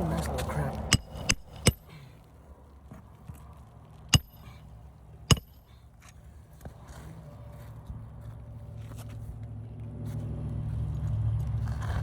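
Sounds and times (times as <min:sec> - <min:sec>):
hammer striking metal: 0:00.9 - 0:01.9, 0:04.2 - 0:04.5, 0:05.3 - 0:05.7.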